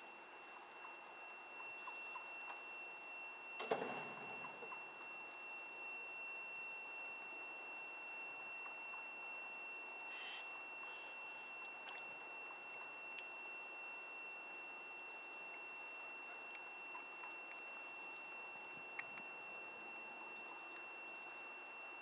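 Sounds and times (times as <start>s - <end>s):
steady high-pitched whine: 0.0s - 22.0s.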